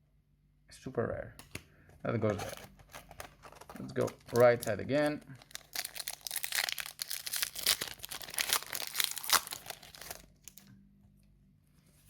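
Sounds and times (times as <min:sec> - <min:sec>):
foil wrapper crinkling and tearing: 0:02.2 - 0:10.7.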